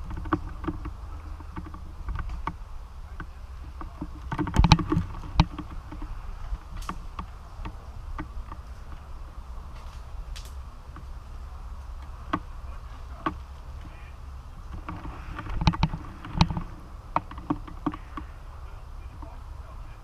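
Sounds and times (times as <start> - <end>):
sharp clicks and knocks: 0.0 - 2.6, 3.2 - 9.0, 14.6 - 18.4
wind rumble on microphone: 0.0 - 20.0.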